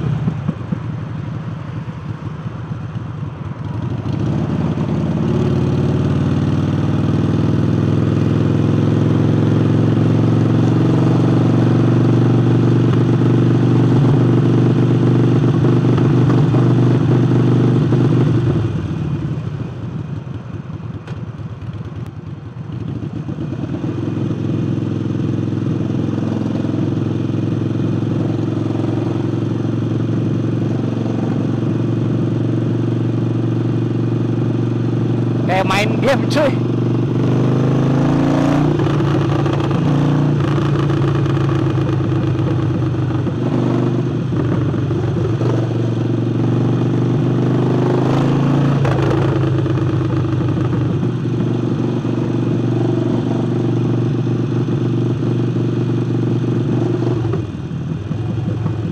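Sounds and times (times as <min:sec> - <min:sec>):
motorcycle engine running: 0:00.0 - 0:58.9.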